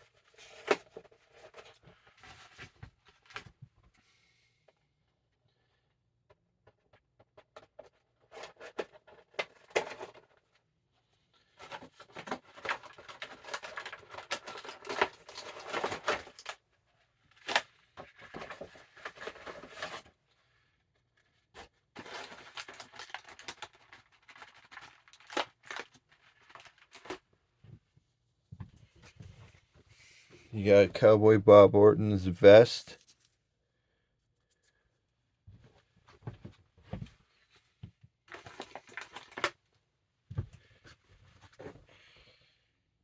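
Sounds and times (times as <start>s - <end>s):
packaging tearing and crinkling: 12.2s - 16.6s, 22.0s - 27.2s, 38.3s - 39.5s.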